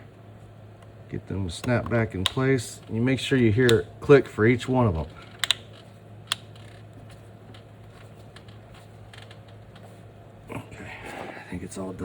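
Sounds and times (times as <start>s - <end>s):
plastic tabs clicking into place: 1.6s - 4.4s, 5.0s - 9.9s.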